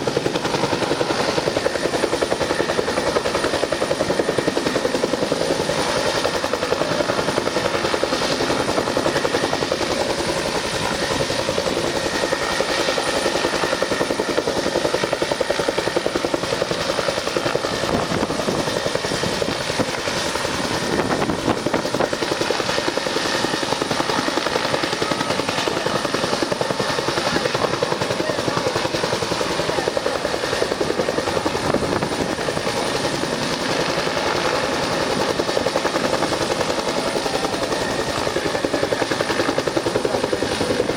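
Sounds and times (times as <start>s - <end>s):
helicopter rotor beating: 0.0s - 40.9s.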